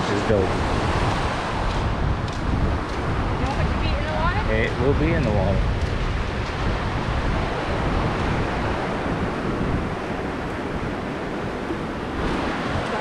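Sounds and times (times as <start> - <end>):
sea surf washing up: 0.0 - 13.0
wind gusting on microphone: 0.0 - 13.0.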